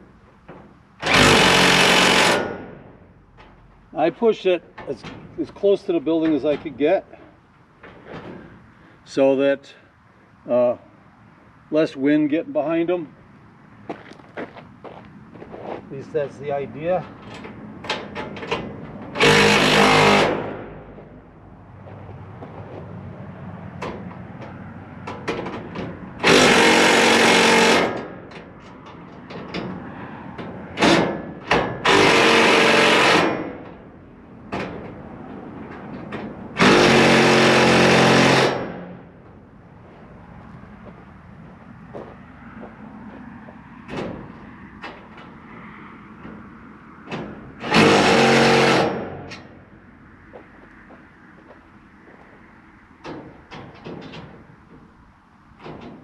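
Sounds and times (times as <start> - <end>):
hardware clicks and knocks: 17.0 - 19.4, 23.8 - 26.4, 27.8 - 32.0, 33.1 - 36.7, 43.8 - 45.4, 46.2 - 49.6, 53.0 - 56.0.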